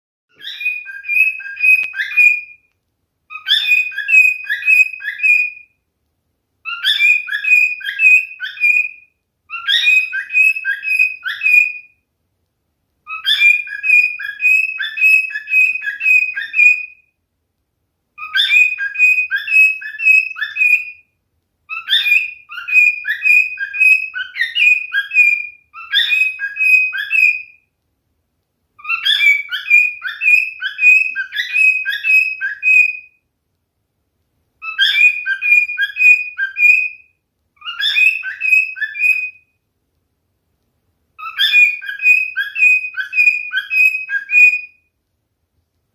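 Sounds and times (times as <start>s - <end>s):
cockatiel whistling chirps: 0.3s - 2.7s, 3.3s - 5.8s, 6.6s - 12.0s, 13.0s - 17.1s, 18.2s - 21.1s, 21.7s - 27.7s, 28.8s - 33.2s, 34.6s - 39.6s, 41.2s - 44.9s.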